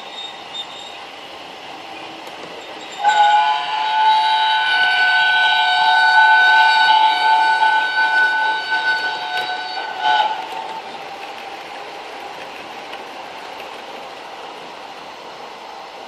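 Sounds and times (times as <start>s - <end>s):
steam hiss: 0.0s - 16.0s
multi-tone steam whistle: 2.7s - 10.9s.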